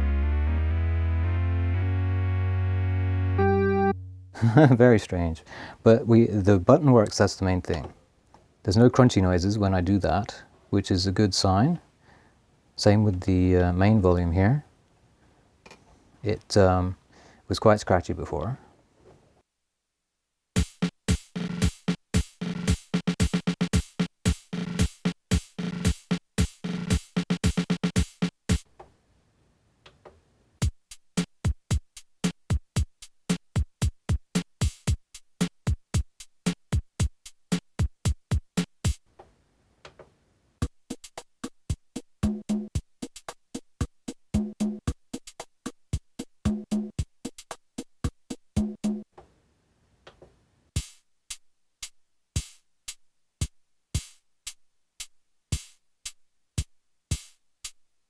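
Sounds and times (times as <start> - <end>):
keyboard chord notes: 0.0 - 4.5
electronic drum pattern: 20.6 - 28.6, 40.6 - 49.0.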